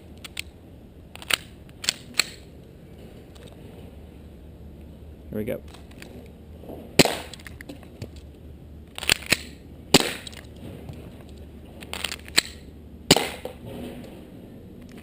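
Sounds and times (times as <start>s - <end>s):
magazine change metallic clacks: 1.1s - 2.5s, 8.9s - 14.2s
airsoft pistol shots: 7.0s - 7.4s, 9.1s - 10.3s, 12.4s - 13.7s.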